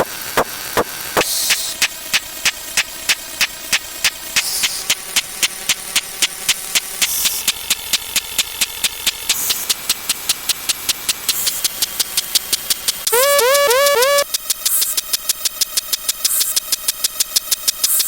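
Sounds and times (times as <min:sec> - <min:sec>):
hiss bursts: 0:00.0 - 0:09.8
rapid electronic clicks: 0:00.0 - 0:18.0
short rising tone: 0:13.1 - 0:14.2.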